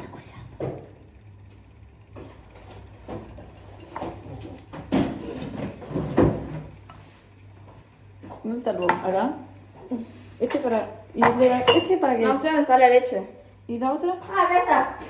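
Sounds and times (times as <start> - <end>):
bowls and cupboards knocking: 8.8 - 9.2, 11.2 - 12.0.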